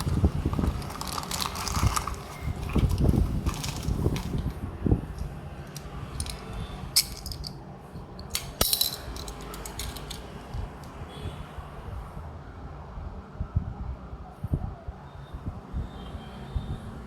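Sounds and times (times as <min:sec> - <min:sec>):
toy car and packaging clinking: 0:00.0 - 0:07.6, 0:08.2 - 0:11.0.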